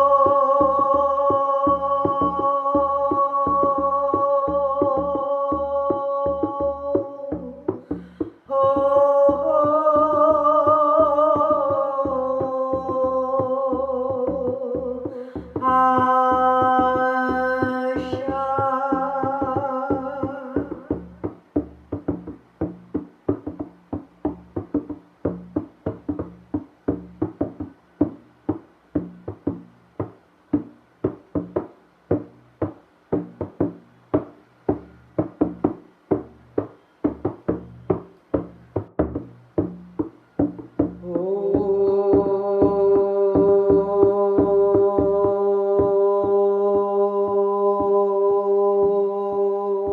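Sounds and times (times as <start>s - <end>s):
person chanting a long tone: 0.0s - 21.2s, 40.9s - 49.9s
hand drum steady beat: 0.0s - 48.1s.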